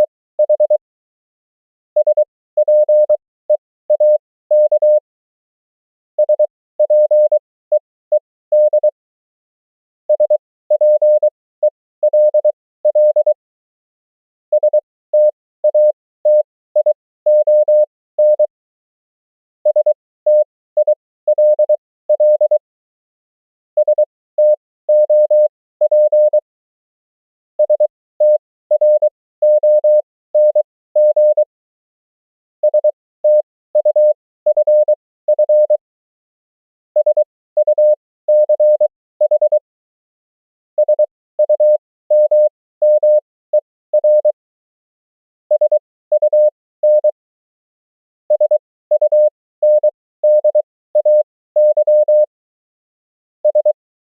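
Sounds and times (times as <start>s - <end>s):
morse code tone: 40.8s - 44.4s, 48.3s - 52.3s.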